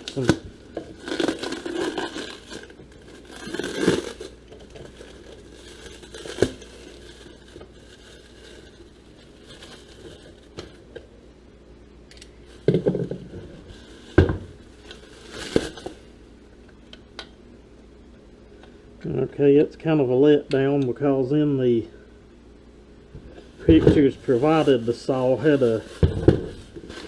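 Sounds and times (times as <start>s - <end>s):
packing material rustling: 0.0s - 10.8s, 13.3s - 16.1s, 23.6s - 27.0s.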